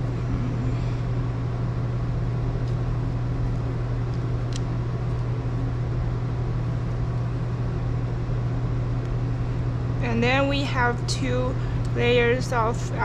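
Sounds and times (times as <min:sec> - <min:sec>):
low machine hum: 0:00.0 - 0:13.0.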